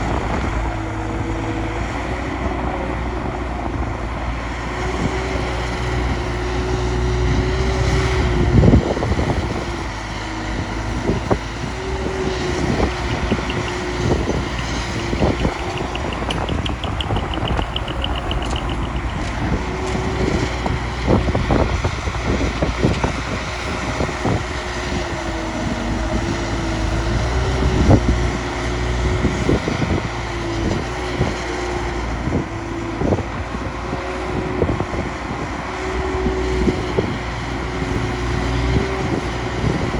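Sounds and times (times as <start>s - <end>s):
diesel engine rumbling and whining: 0.0s - 39.9s
machinery knocks and clanks: 12.6s - 20.1s.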